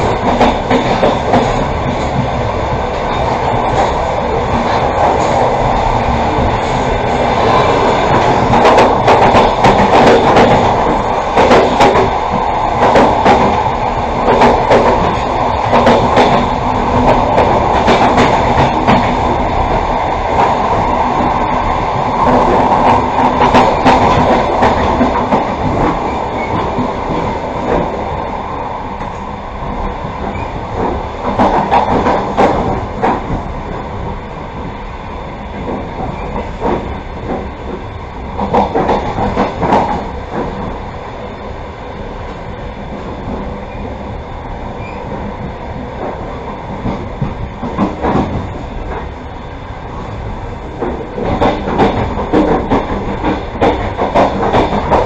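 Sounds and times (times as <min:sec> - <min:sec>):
train rumbling: 0:00.0 - 0:55.0
wheels clattering over rails: 0:50.7 - 0:55.0.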